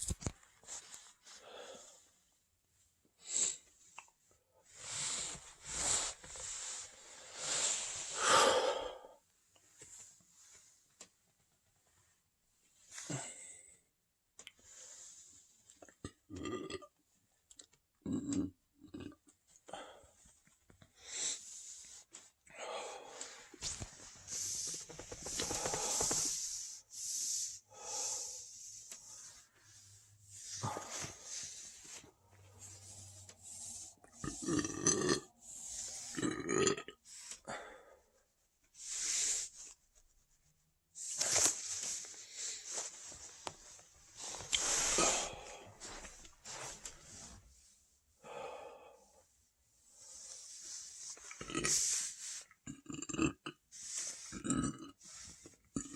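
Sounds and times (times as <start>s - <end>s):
person burping: 16.0s - 16.9s, 18.0s - 19.2s, 34.2s - 35.3s, 36.2s - 37.0s, 52.7s - 53.6s, 54.4s - 54.9s
soft breathy sounds: 19.6s - 34.5s, 41.0s - 52.6s.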